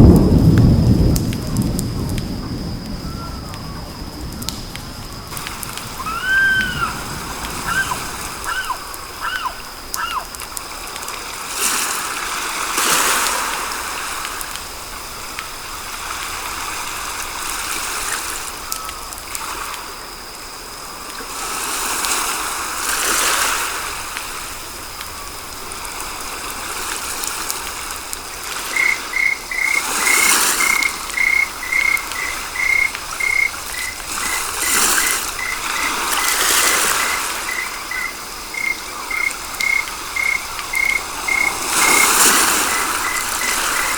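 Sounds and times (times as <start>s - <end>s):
rushing water-like noise: 0.0s - 43.9s
frog calling in short pulses: 7.7s - 10.3s.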